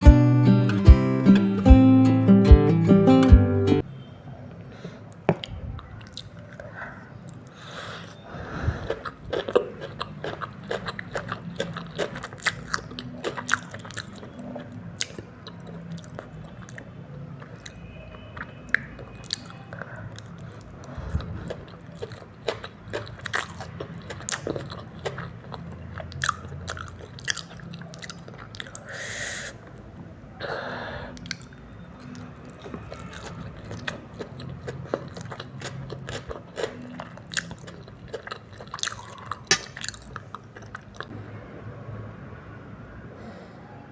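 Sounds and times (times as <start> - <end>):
wet chewing and smacking: 5.2 - 29.1, 31.1 - 41.2.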